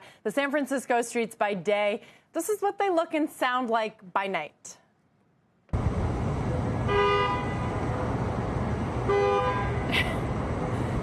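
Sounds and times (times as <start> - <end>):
car horns honking: 6.8 - 7.9, 9.0 - 9.9.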